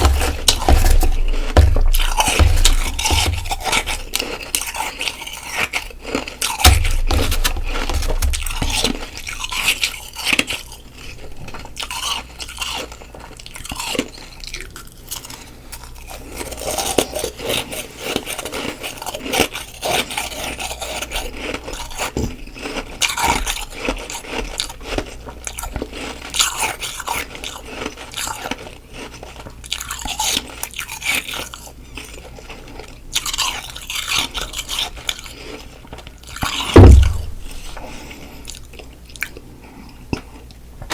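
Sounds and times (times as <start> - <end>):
loud thump: 0.0 - 3.9, 6.7 - 9.0, 36.8 - 37.8
crunching frost chewing: 0.0 - 40.6.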